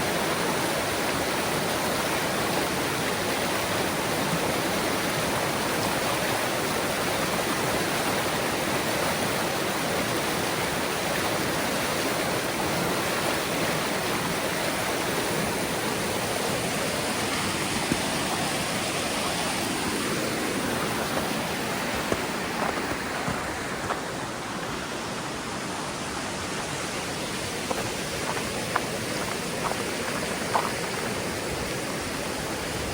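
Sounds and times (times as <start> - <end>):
waterfall roaring: 0.0 - 32.9.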